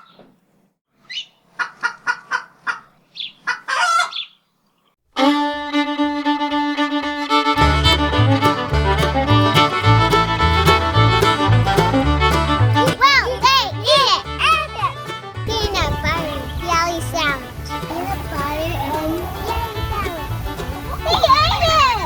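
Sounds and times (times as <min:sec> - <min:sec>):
music with bass line: 0:07.5 - 0:22.0.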